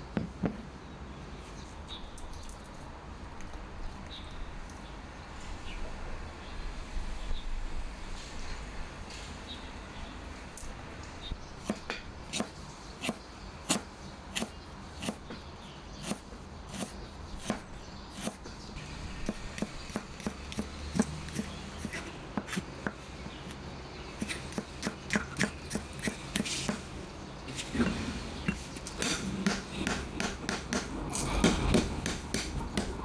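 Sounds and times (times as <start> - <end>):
sharp knocks on a hard surface: 27.6 - 33.0.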